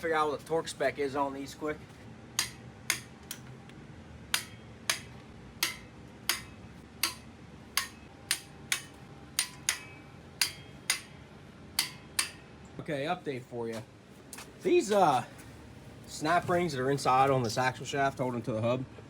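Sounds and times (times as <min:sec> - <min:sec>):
metal tools tapping metal: 0:02.4 - 0:03.5, 0:04.3 - 0:11.2, 0:11.8 - 0:12.5.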